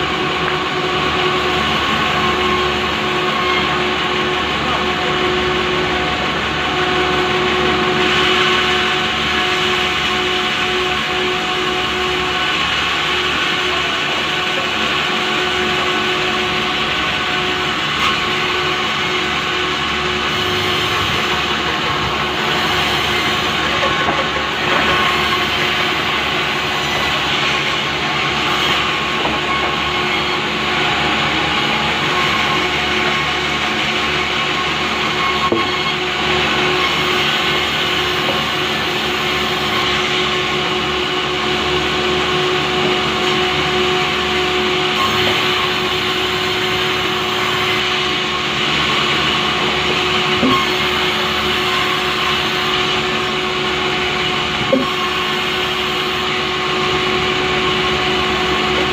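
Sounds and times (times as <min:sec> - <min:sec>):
motorized saw cutting log: 0:00.0 - 0:58.9.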